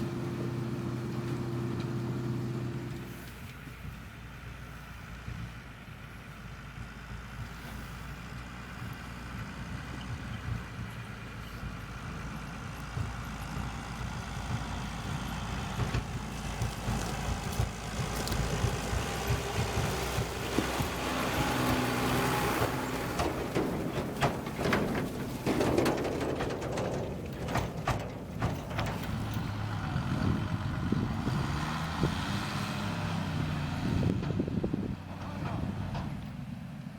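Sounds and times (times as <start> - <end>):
harvest machinery engine rumbling: 0.0 - 36.9
knocks and rattles: 13.0 - 30.6.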